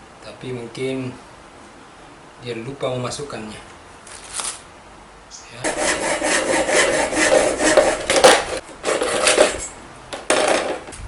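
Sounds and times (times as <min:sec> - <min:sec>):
hose being cut with rasping strokes: 0:05.6 - 0:09.7.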